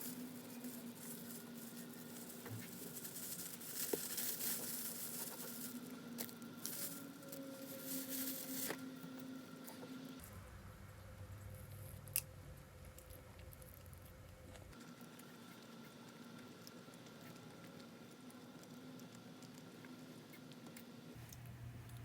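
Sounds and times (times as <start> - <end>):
plastic packaging crinkling: 0.0 - 9.2
steady hum: 0.0 - 18.0.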